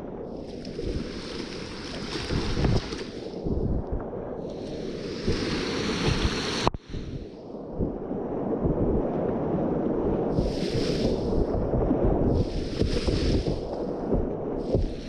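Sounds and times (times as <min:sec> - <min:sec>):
whitewater rushing and splashing: 0:00.6 - 0:03.3, 0:04.5 - 0:07.2, 0:12.3 - 0:14.0, 0:14.6 - 0:15.0.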